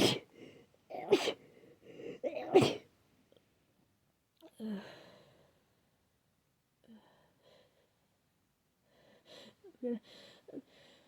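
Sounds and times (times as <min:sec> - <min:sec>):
person sneezing wetly: 0:00.0 - 0:00.3, 0:00.9 - 0:01.4, 0:02.4 - 0:02.8.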